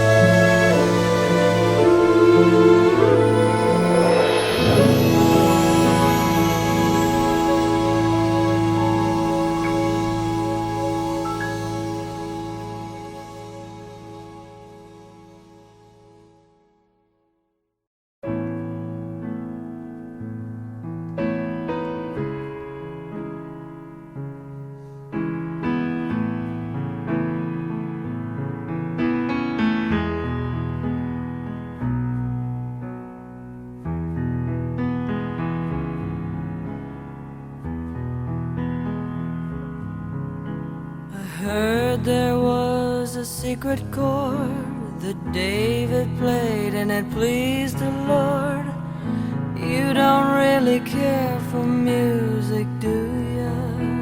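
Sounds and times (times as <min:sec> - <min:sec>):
solo piano chords: 0:00.0 - 0:16.5, 0:18.2 - 0:54.0
instrumental music with held chords: 0:00.0 - 0:17.0.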